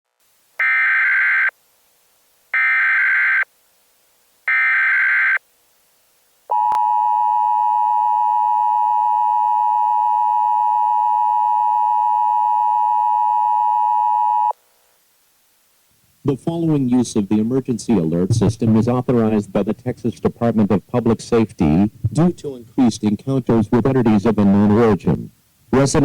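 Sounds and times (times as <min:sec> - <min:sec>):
shrill data tone bursts: 0:00.6 - 0:01.6, 0:04.5 - 0:05.4.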